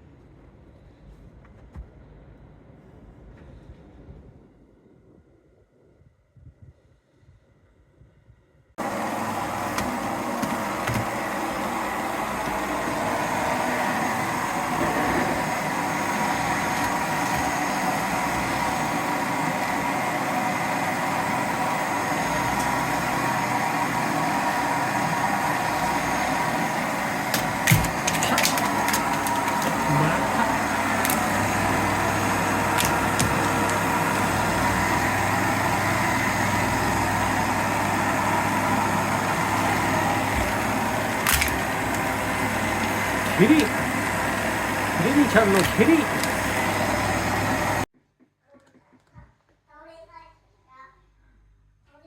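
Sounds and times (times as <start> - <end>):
vacuum cleaner running: 8.8 - 47.9.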